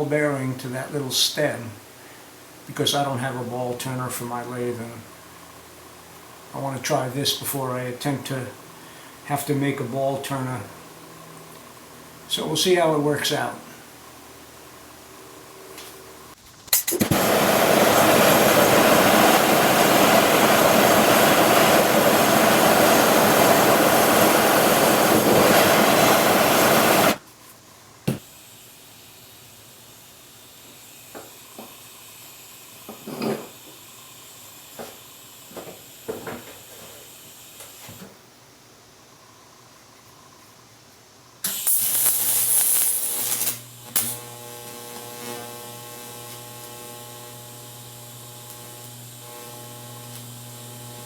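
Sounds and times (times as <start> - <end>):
welding arc hissing: 15.7 - 27.2, 28.1 - 38.1, 41.4 - 51.0
gas hiss: 16.4 - 27.2, 28.1 - 38.2, 41.4 - 47.0.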